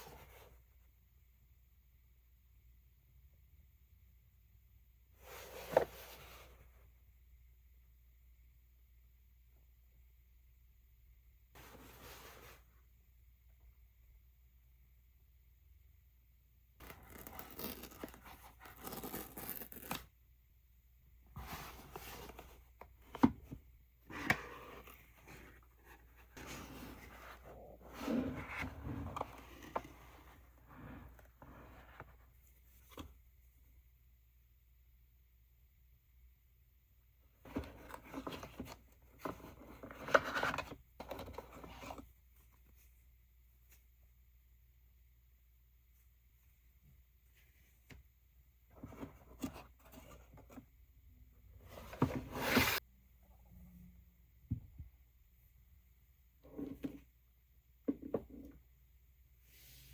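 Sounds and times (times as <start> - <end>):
packaging scratching and tearing: 16.8 - 20.0.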